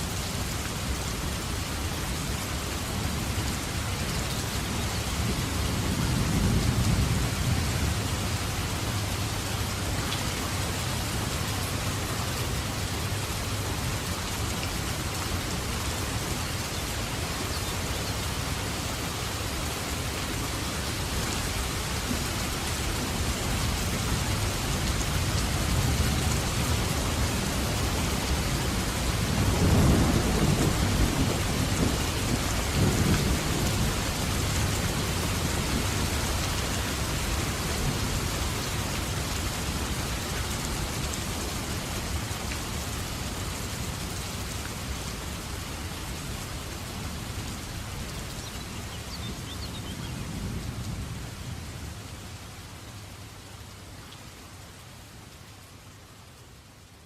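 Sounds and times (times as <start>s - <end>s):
heavy rain: 0.0s - 57.0s
thunder rumbling: 28.7s - 36.1s.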